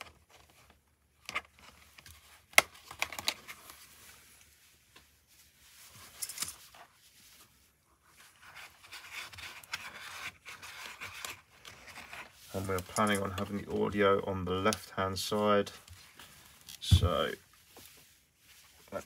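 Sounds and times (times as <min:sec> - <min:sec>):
soft rustle and rubbing: 0:00.0 - 0:19.0.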